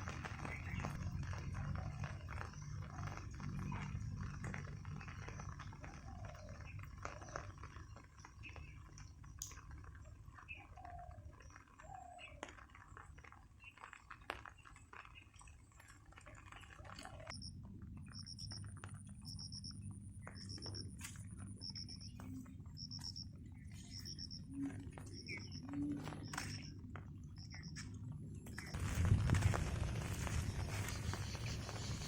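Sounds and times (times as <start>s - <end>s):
low steady rumble: 0.0s - 7.1s, 17.3s - 32.0s
rain drips ticking: 0.0s - 32.0s.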